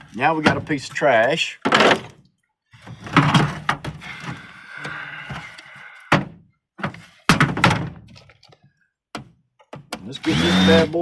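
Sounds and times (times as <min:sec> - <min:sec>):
computer parts knocking and clattering: 0:06.1 - 0:10.1.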